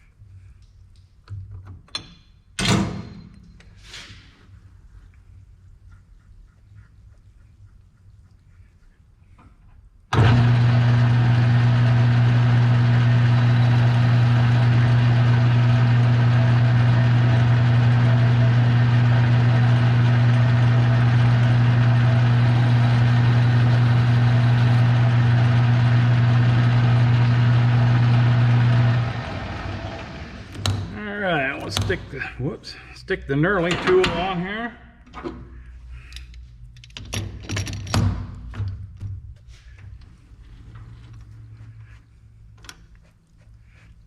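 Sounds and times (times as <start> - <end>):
metal lathe humming: 10.2 - 31.9.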